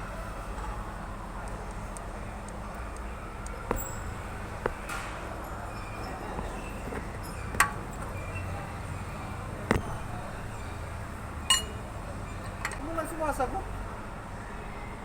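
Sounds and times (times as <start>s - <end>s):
sharp ringing knocks: 3.6s - 8.6s.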